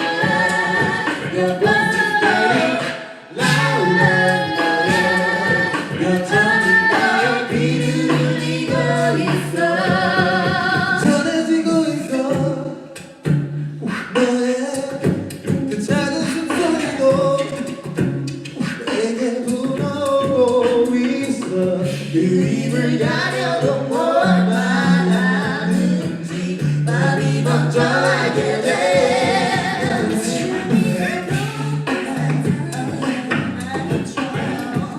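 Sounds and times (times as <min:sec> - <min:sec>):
sung bass line: 0:00.0 - 0:02.8, 0:03.4 - 0:11.3, 0:21.4 - 0:34.9
vocal group singing in harmony: 0:00.0 - 0:34.9.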